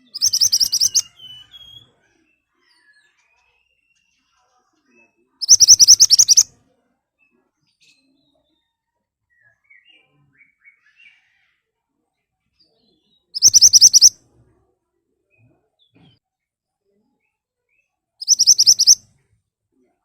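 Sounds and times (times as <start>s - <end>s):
faint soft bird chirps: 0.0s - 14.6s, 15.2s - 19.9s
bird singing rapid sharp notes: 0.1s - 1.8s, 5.4s - 6.5s, 13.4s - 14.1s, 18.2s - 19.0s.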